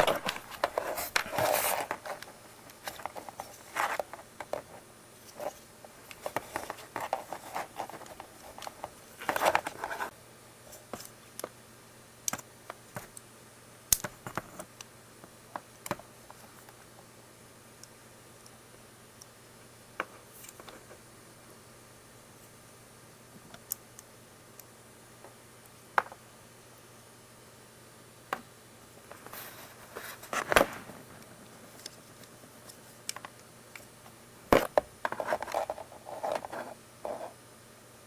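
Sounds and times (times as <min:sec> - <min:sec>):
rustling and scraping of parts: 0:00.0 - 0:11.2, 0:14.0 - 0:14.7, 0:29.0 - 0:37.4.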